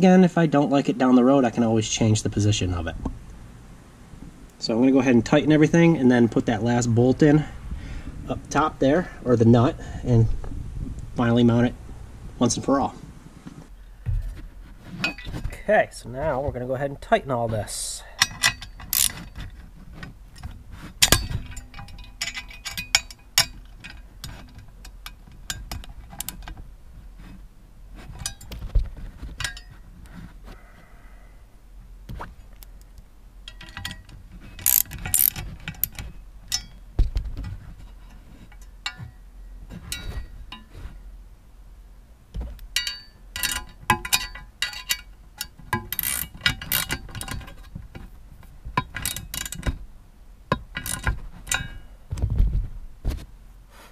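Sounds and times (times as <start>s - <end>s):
ratchet wrench clicking: 18.2s - 19.2s, 34.6s - 36.7s, 42.8s - 47.3s.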